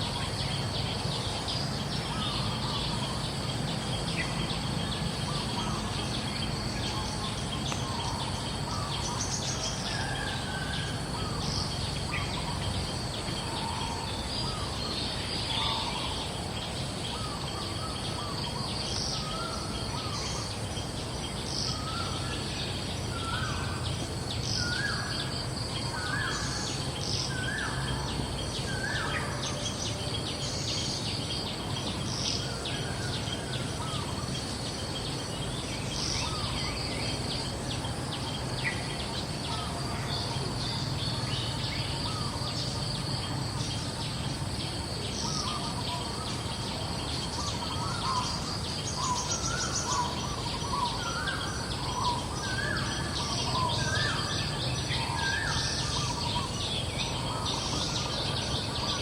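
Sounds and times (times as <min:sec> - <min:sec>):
birds calling: 0:00.0 - 0:59.0
high insect drone: 0:00.0 - 0:59.0.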